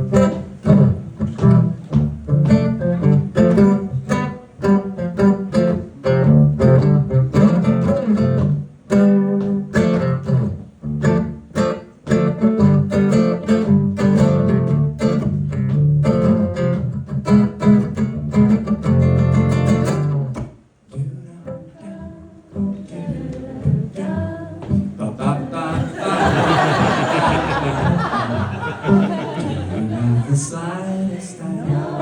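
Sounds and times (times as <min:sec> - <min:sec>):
strummed acoustic guitar: 0:00.0 - 0:21.9.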